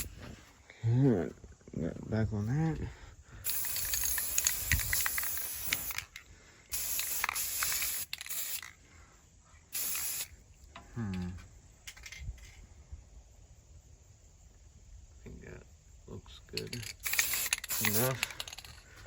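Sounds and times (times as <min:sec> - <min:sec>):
spray paint can hissing: 0:03.4 - 0:08.8, 0:09.7 - 0:10.4, 0:16.8 - 0:18.7.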